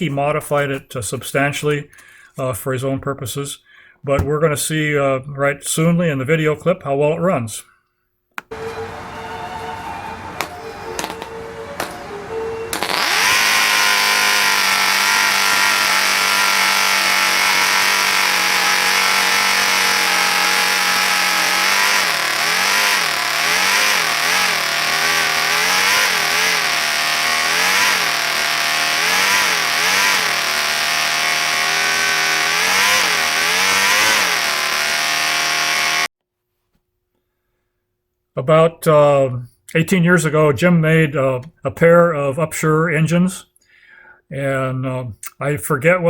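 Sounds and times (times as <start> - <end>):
model engine revving: 10.2 - 36.1.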